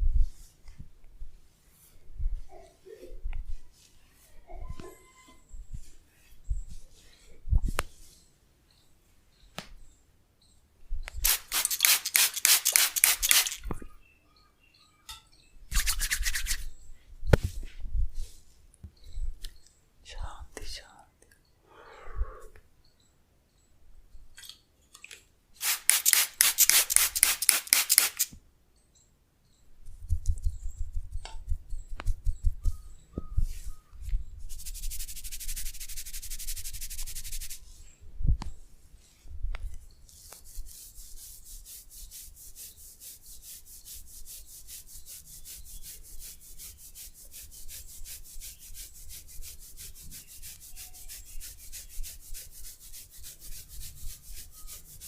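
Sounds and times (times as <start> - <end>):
hands rubbing skin and hair: 11.2 - 13.8, 15.7 - 16.7, 25.6 - 28.4, 29.9 - 37.8, 39.6 - 55.0
soft low pats: 17.3 - 18.2, 29.8 - 37.6.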